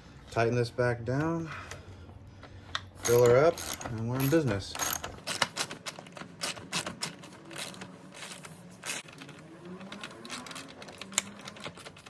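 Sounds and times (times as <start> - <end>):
hand tools clicking and tapping: 2.4 - 12.0.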